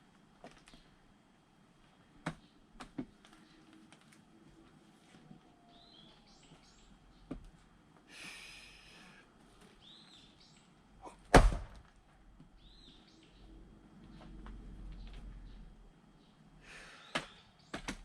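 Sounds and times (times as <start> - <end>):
axe splitting firewood: 11.3 - 11.9
small bird chirping: 12.6 - 16.4.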